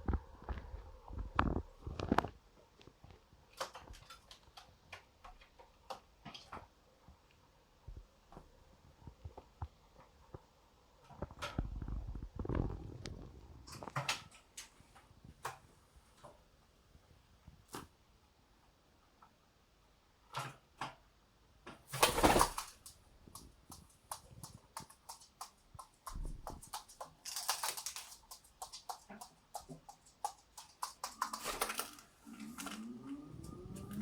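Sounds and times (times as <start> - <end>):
pigeon clicks and rustling: 0.1 - 7.4, 8.3 - 16.4, 21.6 - 34.0
pigeon cooing: 30.9 - 34.0.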